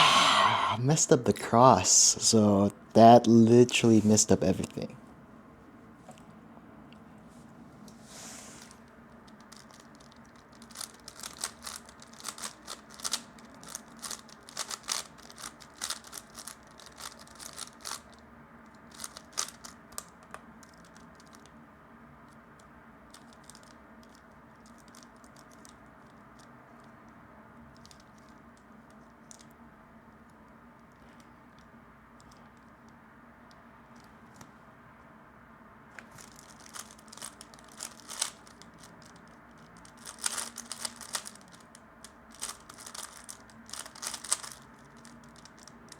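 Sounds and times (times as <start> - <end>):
speed cube clicking turns: 9.3 - 18.1, 18.9 - 21.5, 36.1 - 45.9.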